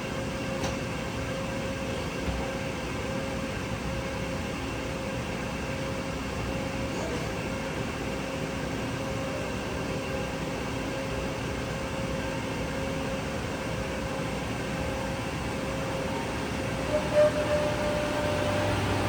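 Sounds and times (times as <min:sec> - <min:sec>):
machinery hum: 0:08.7 - 0:19.0.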